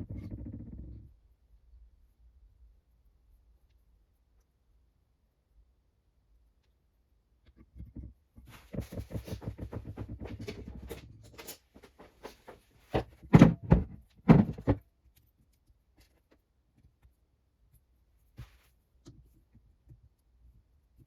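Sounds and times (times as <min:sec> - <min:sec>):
quick clicks and scraping: 0:07.5 - 0:13.3
sharp knocks on metal parts: 0:13.0 - 0:14.8.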